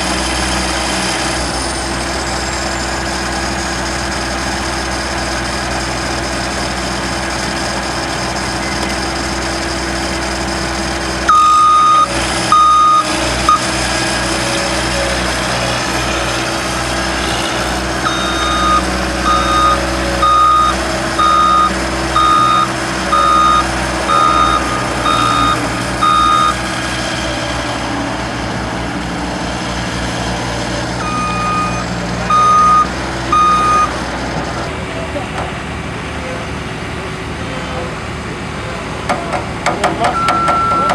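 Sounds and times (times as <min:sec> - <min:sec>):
skid steer engine running: 0:00.0 - 0:40.9
reversing alarm beeping: 0:11.3 - 0:27.8, 0:30.5 - 0:34.0, 0:40.0 - 0:40.9.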